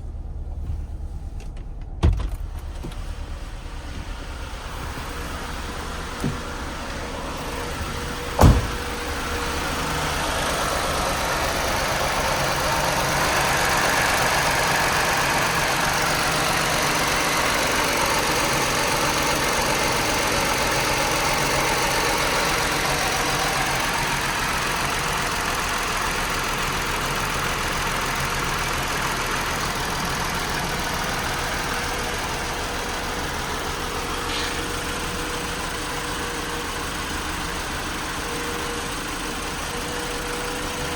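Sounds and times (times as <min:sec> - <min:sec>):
car engine idling: 0:00.0 - 0:40.9
sharp knock: 0:08.4 - 0:08.9.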